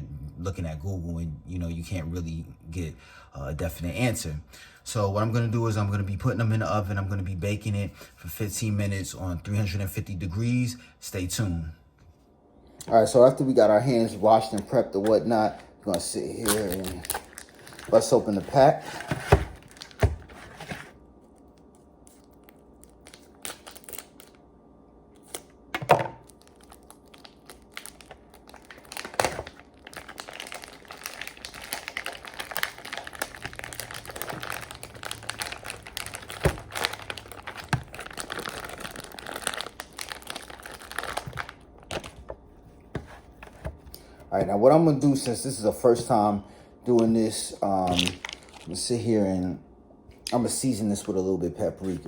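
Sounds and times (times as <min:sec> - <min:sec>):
plastic packaging crinkling: 0:14.3 - 0:24.4, 0:26.2 - 0:42.4, 0:47.0 - 0:49.0.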